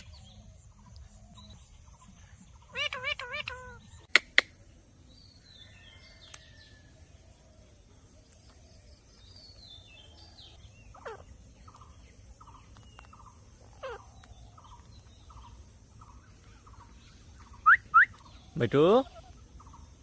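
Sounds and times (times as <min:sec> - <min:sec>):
background hiss: 0:00.0 - 0:20.0
birds chirping: 0:00.0 - 0:20.0
wavering bird call: 0:02.6 - 0:04.4, 0:13.7 - 0:14.8, 0:17.5 - 0:19.8
sharp loud clicks: 0:04.1 - 0:04.5.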